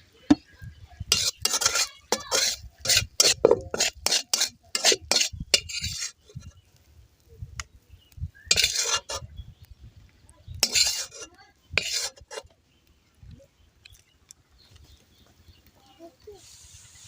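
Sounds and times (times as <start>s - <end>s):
metal spoon scraping a pot: 1.1s - 6.6s, 8.5s - 9.2s, 10.6s - 12.5s.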